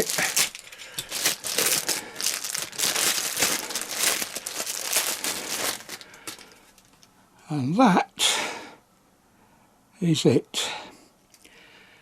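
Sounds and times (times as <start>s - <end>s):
plastic bag crinkling: 0.0s - 7.1s.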